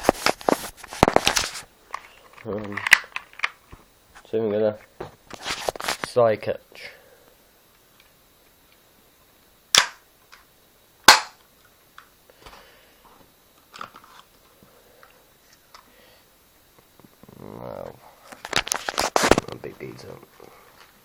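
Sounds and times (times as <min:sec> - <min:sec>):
airsoft pistol shots: 0:09.7 - 0:10.0, 0:11.1 - 0:11.4.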